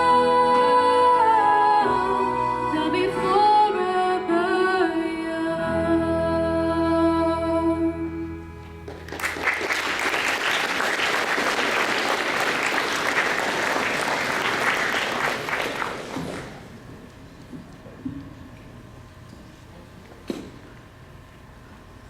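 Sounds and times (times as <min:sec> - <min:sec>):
audience clapping: 0:08.8 - 0:16.8.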